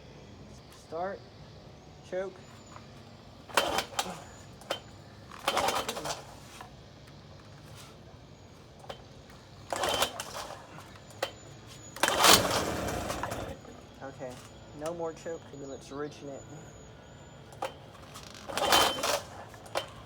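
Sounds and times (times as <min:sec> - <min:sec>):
recoil starter rope whirring: 0:00.7 - 0:20.0.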